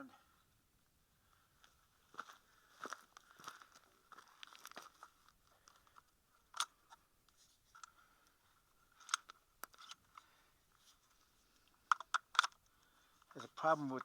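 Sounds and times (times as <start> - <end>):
rifle being handled: 4.9 - 8.3, 8.9 - 14.0
sharp metallic clicks: 11.9 - 14.0.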